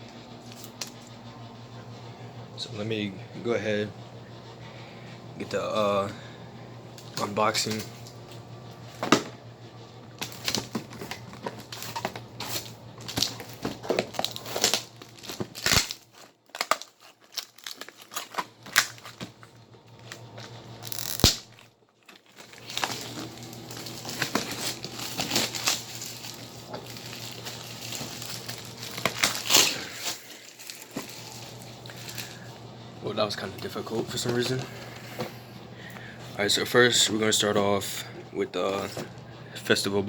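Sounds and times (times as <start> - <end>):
packaging ripping and crinkling: 7.0 - 8.2, 10.2 - 32.5.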